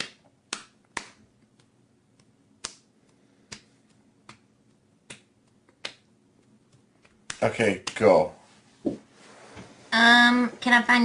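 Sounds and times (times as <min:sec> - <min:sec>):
sharp snaps or clicks: 0:00.0 - 0:02.9.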